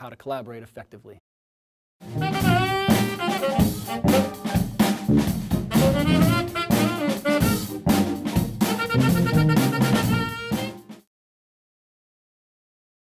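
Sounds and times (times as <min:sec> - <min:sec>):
brass horns melody: 0:02.0 - 0:11.0
drum kit: 0:02.0 - 0:11.1
jazz ensemble playing: 0:02.0 - 0:11.1.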